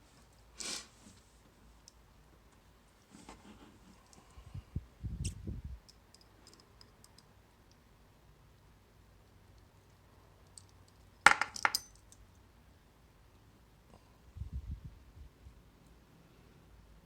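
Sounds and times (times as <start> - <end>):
metal lock parts clinking: 10.5 - 12.2.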